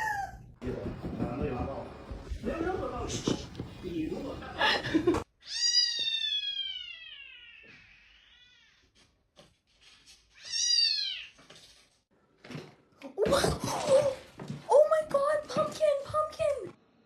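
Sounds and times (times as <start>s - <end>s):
cat meowing: 5.4s - 8.9s.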